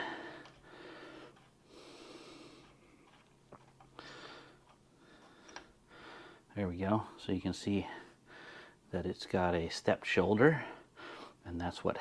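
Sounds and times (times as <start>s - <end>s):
man breathing hard: 0.0s - 3.0s, 4.0s - 6.5s, 7.8s - 8.9s, 10.7s - 11.4s
faint clicks: 2.5s - 5.7s.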